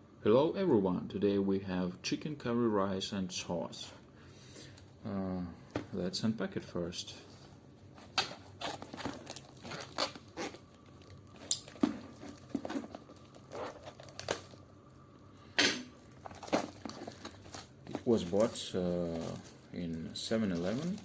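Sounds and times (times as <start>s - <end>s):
packaging crinkling and tearing: 8.0s - 14.7s, 15.9s - 21.0s.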